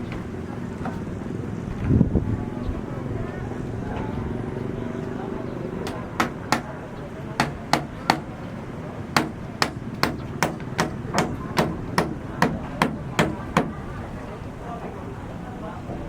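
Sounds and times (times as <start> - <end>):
hammer striking: 5.8 - 6.8, 7.4 - 8.4, 9.2 - 13.8.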